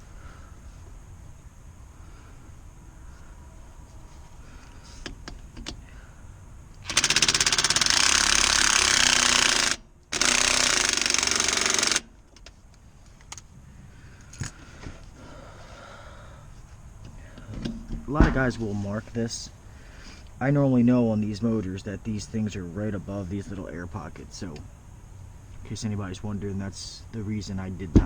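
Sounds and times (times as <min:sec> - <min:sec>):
small handling clicks: 0:06.7 - 0:13.5
impact driver hammering: 0:06.8 - 0:12.1.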